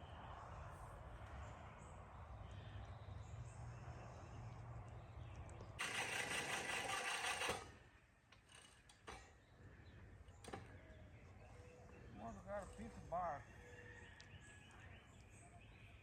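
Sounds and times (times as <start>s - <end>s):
electric lawn mower humming: 5.8s - 9.4s.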